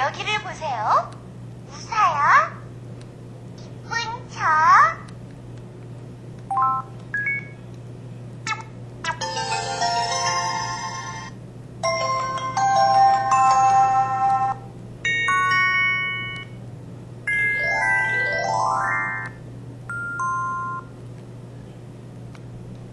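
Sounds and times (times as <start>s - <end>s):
phone notification chimes: 17.3s - 20.9s.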